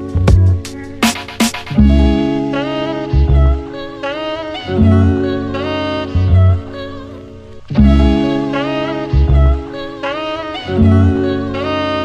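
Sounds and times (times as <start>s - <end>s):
melody over held bass: 0.0s - 1.1s, 1.7s - 12.0s
drum hits: 0.2s - 2.2s.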